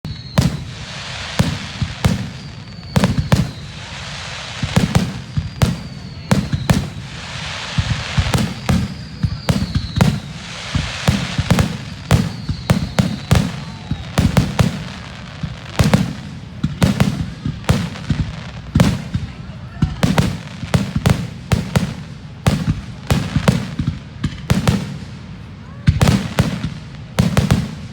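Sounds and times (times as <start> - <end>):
falling whistles: 0.0 - 16.0
fireworks crackling: 0.0 - 27.9
fireworks shells bursting: 0.1 - 19.1.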